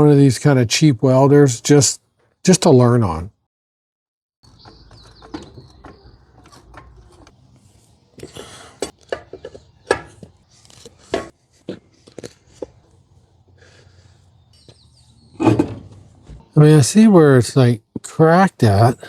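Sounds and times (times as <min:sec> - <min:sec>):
knocks and clatter of handling: 0:04.4 - 0:11.4
scraping rustle: 0:04.5 - 0:13.0.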